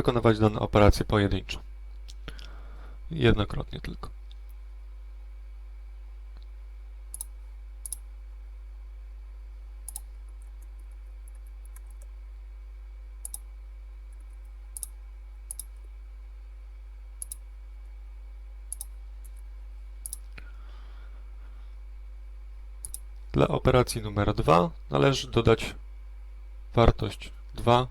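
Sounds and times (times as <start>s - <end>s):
steady low hum: 0.0s - 27.9s
computer mouse clicking: 7.1s - 8.0s, 9.9s - 12.1s, 13.2s - 13.5s, 14.1s - 15.8s, 17.2s - 17.4s, 18.7s - 19.4s, 20.0s - 20.3s, 22.8s - 23.0s.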